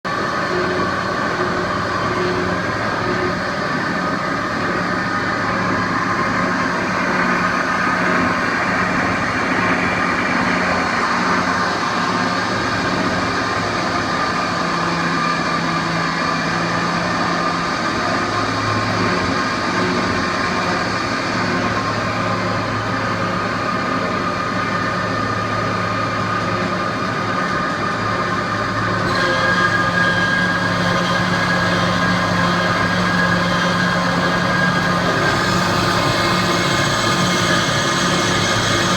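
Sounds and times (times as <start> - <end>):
bandsaw cutting steel tube: 27.4 - 38.9.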